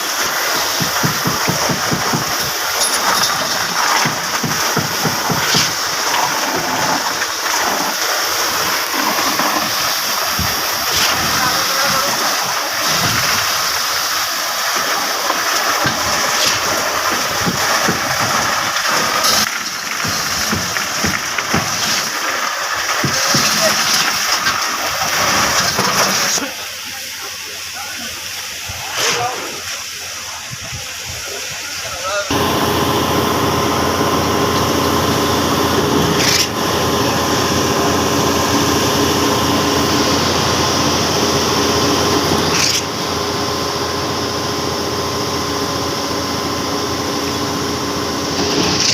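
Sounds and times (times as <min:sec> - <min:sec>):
concrete pump mechanical din: 0:00.0 - 0:48.9
burst of hiss: 0:25.5 - 0:31.8.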